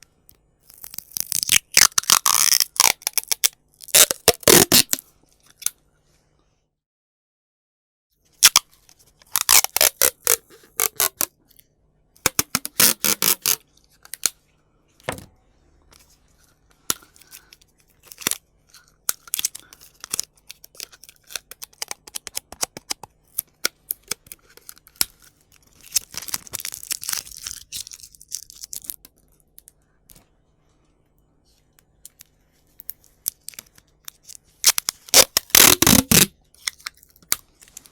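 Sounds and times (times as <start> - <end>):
tape pulled off roll crackling: 0.7 - 5.0, 9.2 - 11.3, 12.2 - 14.3, 33.3 - 37.9.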